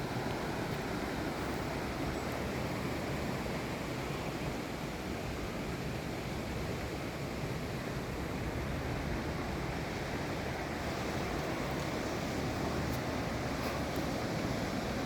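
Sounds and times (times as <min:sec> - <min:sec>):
sea surf roar: 0:06.5 - 0:15.0.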